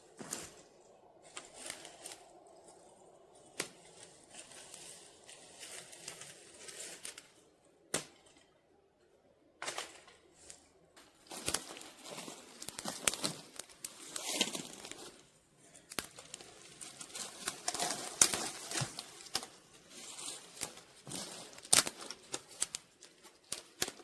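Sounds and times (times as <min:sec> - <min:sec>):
brush and twigs rustling: 0:00.0 - 0:08.6, 0:09.6 - 0:24.0
twigs snapping: 0:03.6 - 0:07.3, 0:11.2 - 0:24.0.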